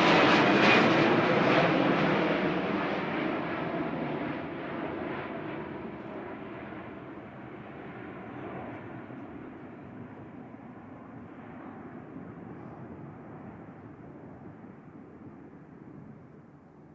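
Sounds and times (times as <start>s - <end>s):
jet airliner engine rush: 0.0s - 5.2s.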